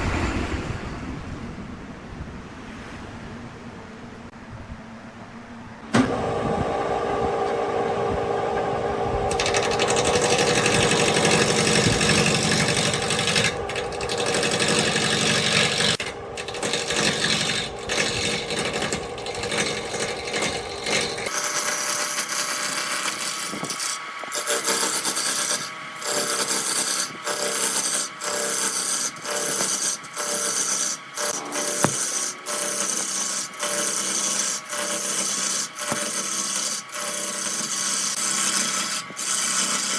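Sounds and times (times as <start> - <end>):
lathe tool scraping wood: 9.3 - 39.9.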